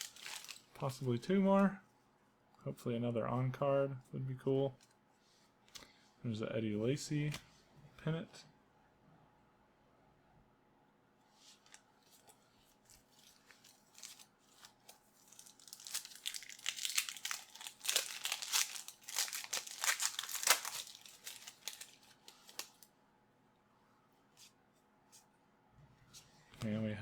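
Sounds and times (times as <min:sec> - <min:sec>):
wrapper being torn and crinkled: 0:00.0 - 0:00.8, 0:12.2 - 0:22.9.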